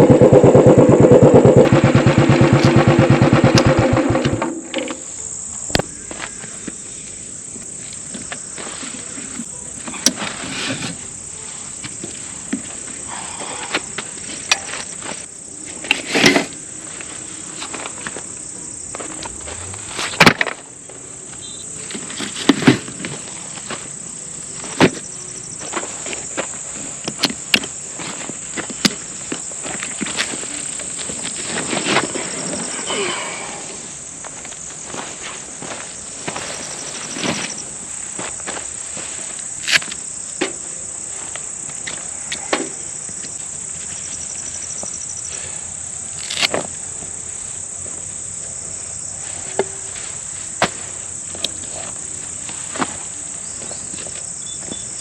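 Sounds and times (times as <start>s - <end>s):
vehicle engine running loudly: 0.0s - 4.5s
insects chirring: 0.0s - 55.0s.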